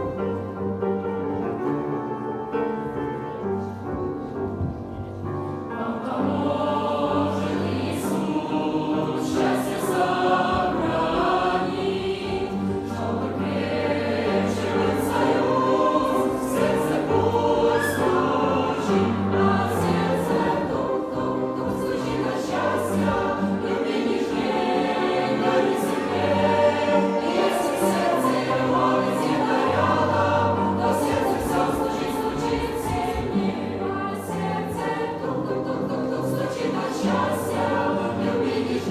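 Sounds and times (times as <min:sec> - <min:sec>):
instrumental accompaniment: 0:00.0 - 0:38.9
choir singing: 0:05.2 - 0:38.9.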